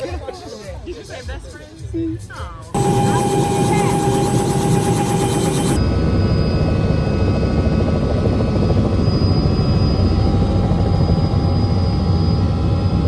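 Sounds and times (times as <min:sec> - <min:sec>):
helicopter rotor and engine rumble: 0:02.7 - 0:13.0
thin high whine: 0:02.8 - 0:13.0.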